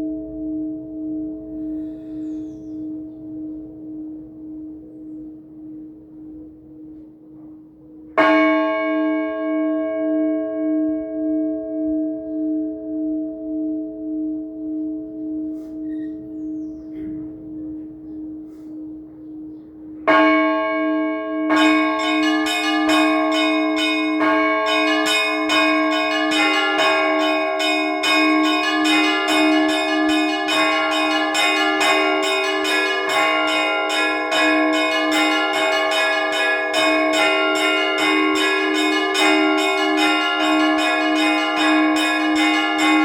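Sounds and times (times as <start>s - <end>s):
church bells pealing: 0.0s - 43.0s
bell struck: 21.5s - 43.0s
small bells chiming rapidly: 21.6s - 43.0s.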